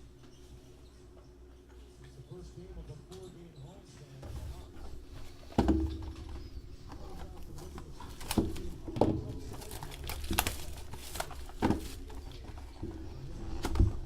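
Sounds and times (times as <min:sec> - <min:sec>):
wrapper crinkling: 0:07.0 - 0:12.9.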